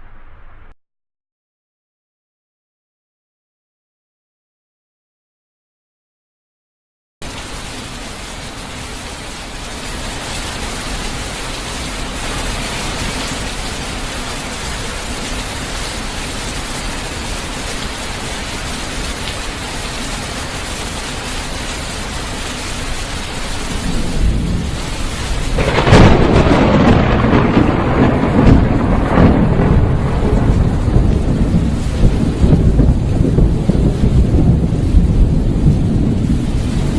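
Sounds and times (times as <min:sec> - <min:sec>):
steady rain hissing: 0:07.2 - 0:36.9
thunder crack and rumbling: 0:23.6 - 0:36.9.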